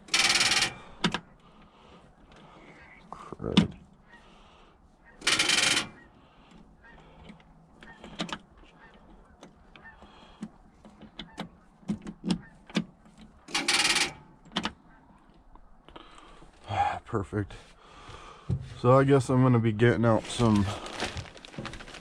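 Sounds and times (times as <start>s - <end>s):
starter solenoid rapid clicking: 0.0s - 1.2s, 5.2s - 6.0s, 13.5s - 14.3s.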